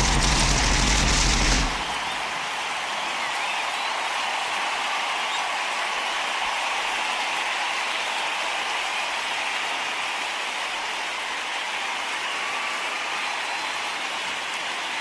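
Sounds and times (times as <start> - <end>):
steady rushing noise: 0.0 - 2.2.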